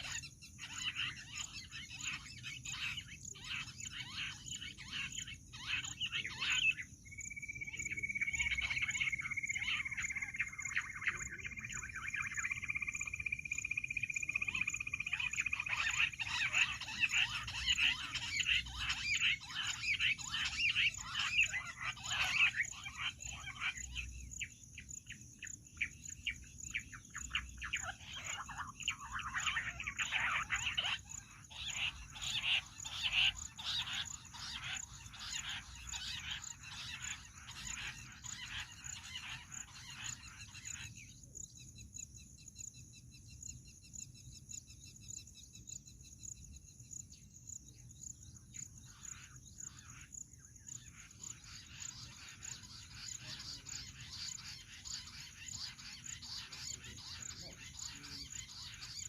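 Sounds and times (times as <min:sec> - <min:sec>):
quail chattering calls: 0:00.0 - 0:24.5, 0:26.7 - 0:41.0, 0:50.8 - 0:59.0.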